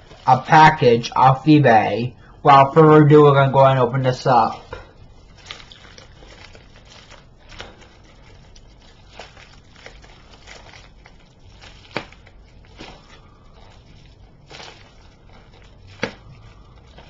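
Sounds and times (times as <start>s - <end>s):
packaging crinkling and tearing: 4.3s - 17.0s.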